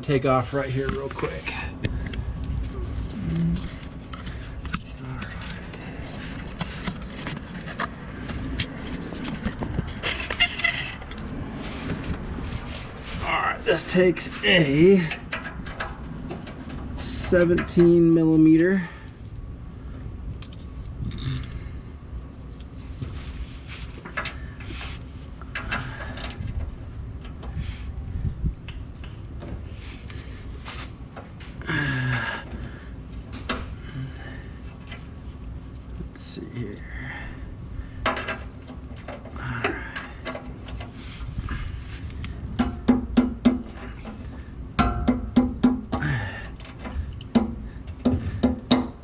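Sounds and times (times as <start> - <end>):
low steady hum: 0.0 - 49.0
ringing metal knocks: 44.8 - 45.8.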